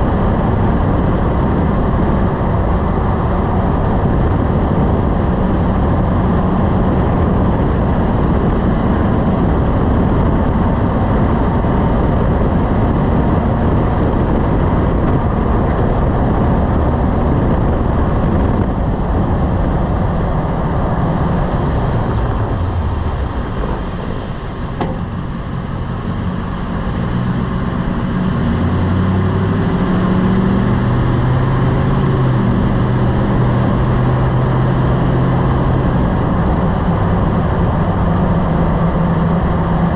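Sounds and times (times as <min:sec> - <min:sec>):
engine pulling: 0:00.0 - 0:39.9
pickup truck road and drivetrain noise: 0:00.0 - 0:39.9
sharp knock under braking: 0:23.3 - 0:25.8.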